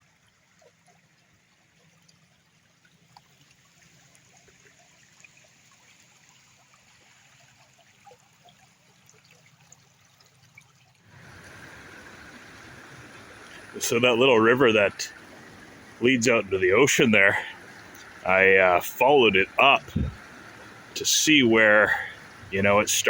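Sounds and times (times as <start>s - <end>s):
small river trickling: 0.0s - 23.0s
water splashes and drips: 0.0s - 23.0s
low hum: 11.2s - 23.0s.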